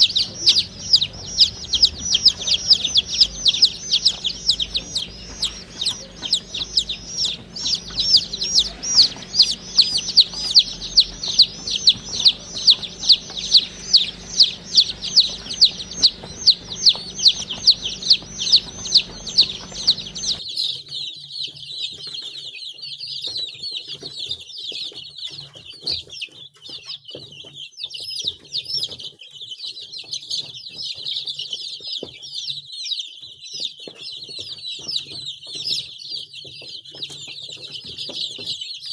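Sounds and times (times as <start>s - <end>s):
baby chicks peeping: 0.0s - 38.9s.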